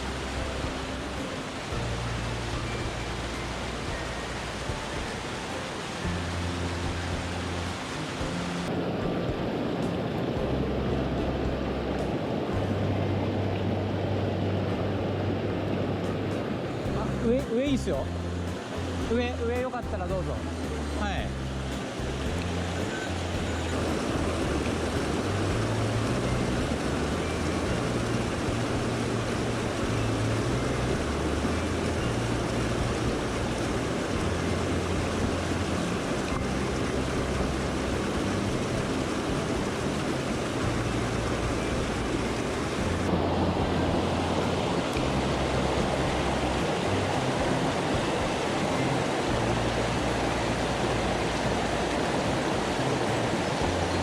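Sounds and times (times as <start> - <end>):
mountain stream rushing: 0.0 - 54.0.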